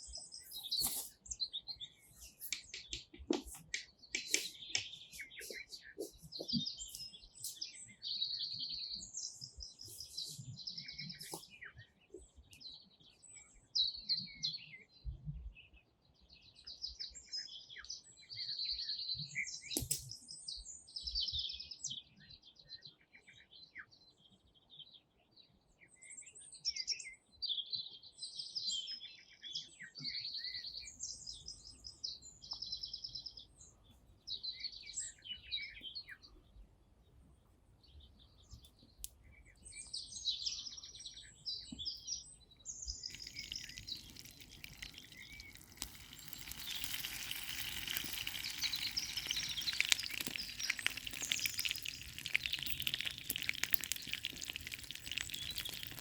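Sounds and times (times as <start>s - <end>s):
songbird chirping: 0.0s - 56.0s
food sizzling in a pan: 43.0s - 56.0s.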